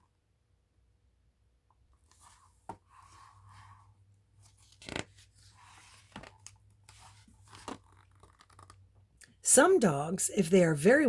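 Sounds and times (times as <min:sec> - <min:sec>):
paper pages rustling: 0:04.4 - 0:08.8.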